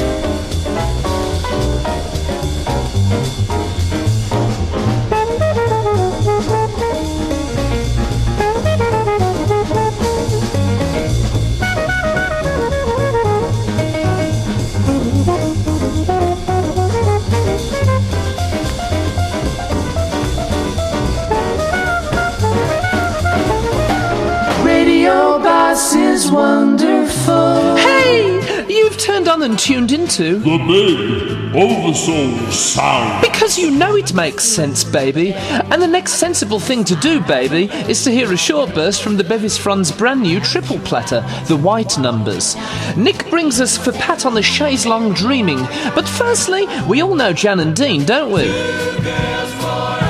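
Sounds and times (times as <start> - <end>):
swing jazz with brass and drums: 0.0 - 29.0.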